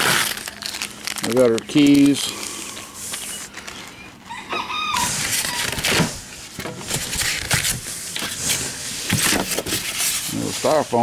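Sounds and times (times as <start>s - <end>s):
styrofoam being torn apart: 0.0s - 1.4s.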